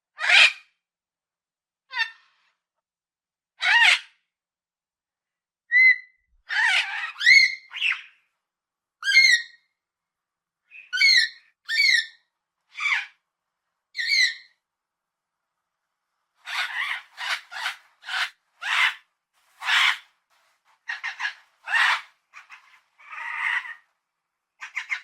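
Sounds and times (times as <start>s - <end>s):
parrot squawking: 0.2s - 0.6s, 3.6s - 4.1s, 5.8s - 8.1s, 9.0s - 9.6s, 10.8s - 13.2s, 14.0s - 14.5s, 16.4s - 20.1s, 20.8s - 23.8s, 24.6s - 25.0s.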